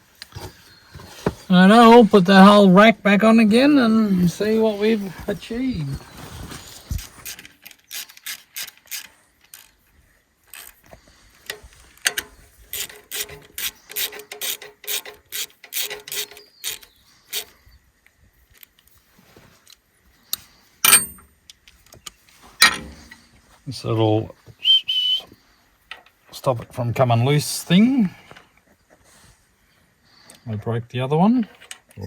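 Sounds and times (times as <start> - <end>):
ratchet spanner clicking: 11.5 - 17.5
sharp metal clinks: 20.8 - 21.3.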